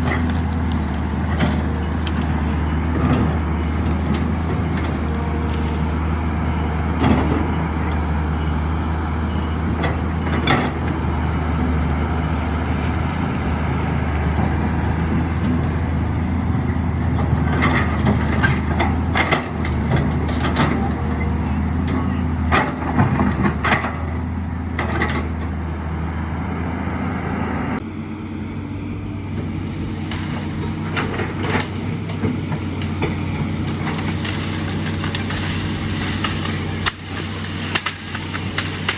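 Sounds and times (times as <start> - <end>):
tree branches cracking: 0.0 - 3.0, 4.8 - 7.2, 10.9 - 14.1, 15.4 - 20.5, 29.4 - 38.9
excavator diesel engine running: 0.0 - 38.9.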